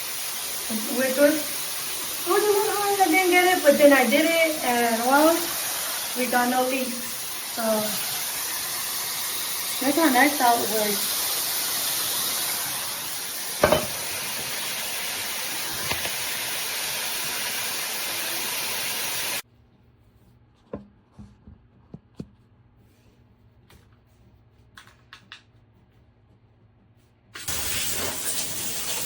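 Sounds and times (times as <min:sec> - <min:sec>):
shower head spraying water: 0:00.0 - 0:19.4, 0:27.4 - 0:29.0.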